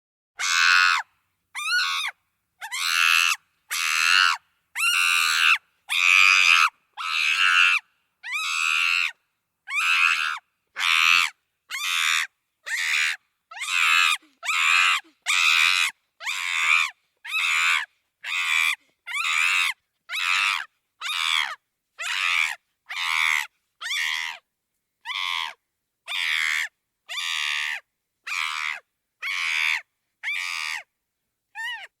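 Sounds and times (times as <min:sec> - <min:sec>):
chimpanzee screaming: 0:00.4 - 0:01.0.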